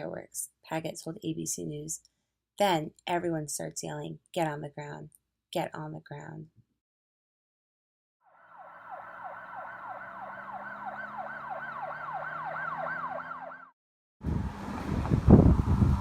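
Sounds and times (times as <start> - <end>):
siren yelping: 8.3 - 13.7
wind buffeting microphone: 14.2 - 16.0.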